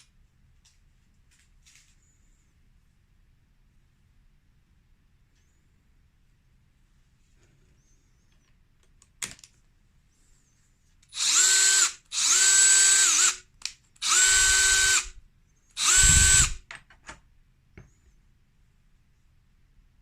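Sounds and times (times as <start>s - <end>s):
cordless drill motor whine: 11.2s - 13.4s, 14.0s - 15.2s, 15.8s - 16.6s.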